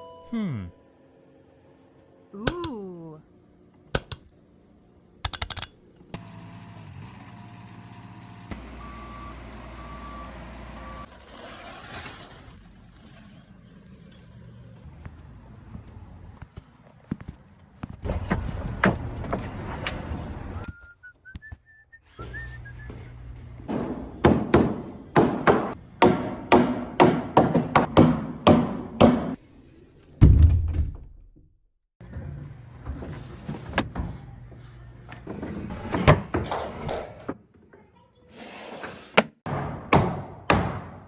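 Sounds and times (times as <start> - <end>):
mallet knocking timber: 39.5 - 41.0.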